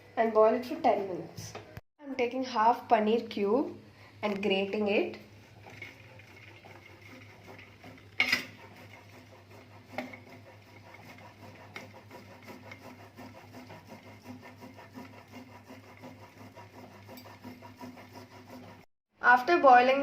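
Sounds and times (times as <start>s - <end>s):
cheese grating on metal grater: 4.3s - 18.9s.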